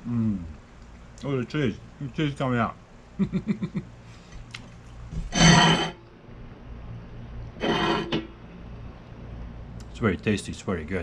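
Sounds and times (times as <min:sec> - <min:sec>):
man making appreciative mmm sounds: 0:00.0 - 0:00.6.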